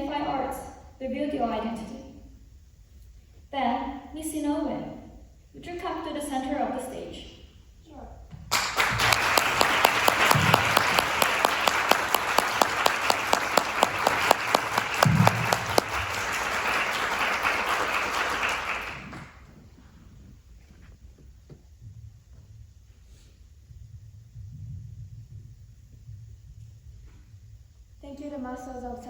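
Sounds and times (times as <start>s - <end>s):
audience applauding: 8.5s - 19.6s.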